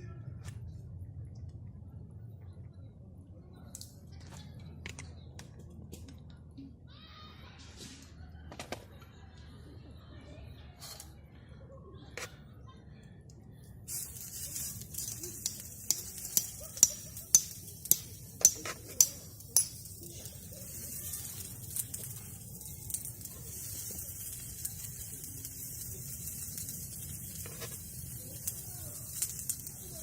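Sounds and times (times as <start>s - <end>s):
food sizzling in a pan: 13.9s - 30.0s.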